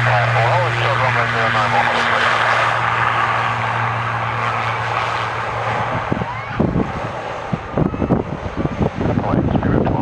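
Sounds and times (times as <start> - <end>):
aircraft engine hum: 0.0 - 10.0
wind buffeting microphone: 2.3 - 10.0.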